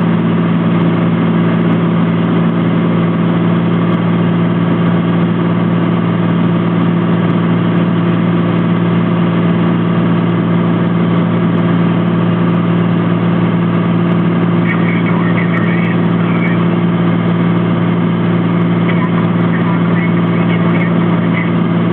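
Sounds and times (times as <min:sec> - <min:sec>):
propeller plane engine drone: 0:00.0 - 0:21.9
faint voice: 0:14.6 - 0:16.7, 0:18.9 - 0:21.9.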